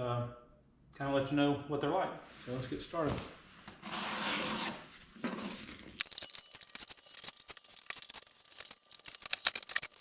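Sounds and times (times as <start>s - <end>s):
packaging crackling and tearing: 6.0s - 10.0s.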